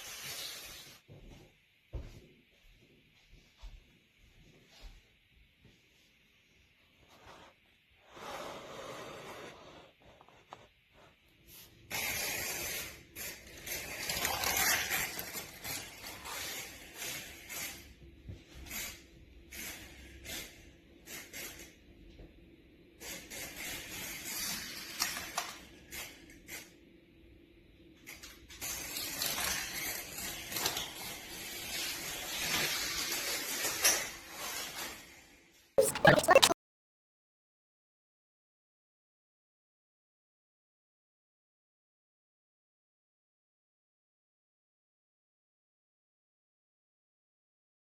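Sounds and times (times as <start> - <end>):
toy cars rolling on plastic track: 0.0 - 1.0, 11.8 - 22.2, 22.9 - 26.9, 27.9 - 35.7.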